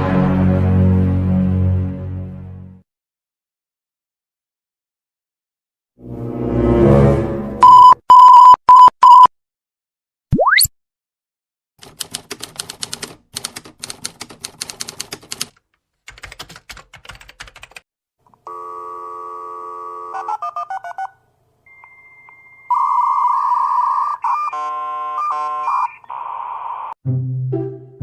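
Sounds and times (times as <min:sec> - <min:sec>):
stepped ringtone beeps: 0:07.6 - 0:09.3
telephone tones: 0:07.6 - 0:09.3, 0:18.4 - 0:27.0.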